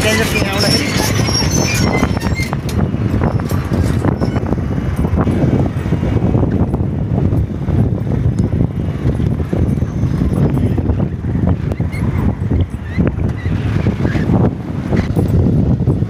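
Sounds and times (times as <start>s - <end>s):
vehicle rumbling and rattling: 0.0s - 16.0s
wind buffeting microphone: 0.0s - 16.0s.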